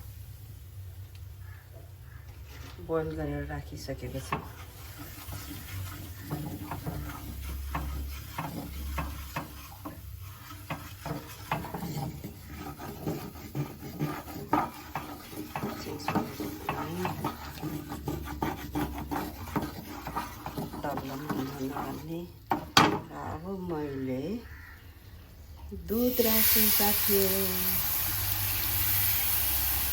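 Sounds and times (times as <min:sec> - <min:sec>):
utensil scraping a pan: 0:02.1 - 0:23.6.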